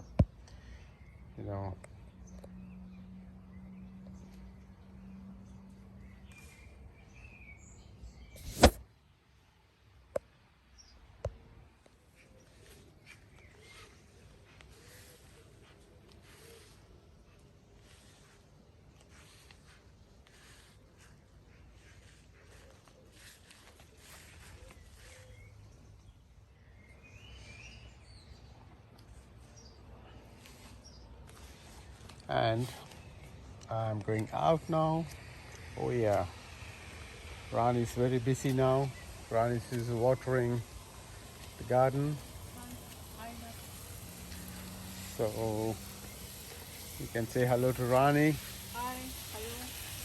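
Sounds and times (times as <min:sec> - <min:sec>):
bird chirps: 0:02.0 - 0:08.7, 0:12.2 - 0:16.8, 0:21.8 - 0:28.6
faint bird chirps: 0:12.1 - 0:18.4, 0:19.3 - 0:32.0.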